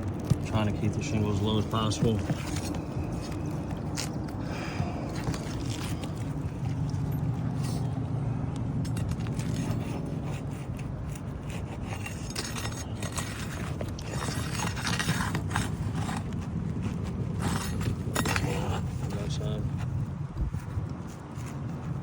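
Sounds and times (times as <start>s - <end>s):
metal tool scraping shingles: 8.8s - 19.8s.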